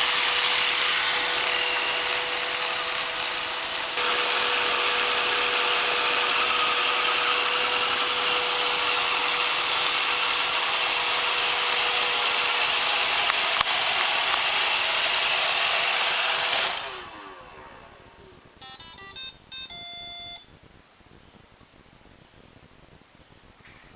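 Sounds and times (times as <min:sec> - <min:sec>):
robot vacuum hum: 0:00.0 - 0:20.4
electronic beep tune: 0:18.6 - 0:20.4.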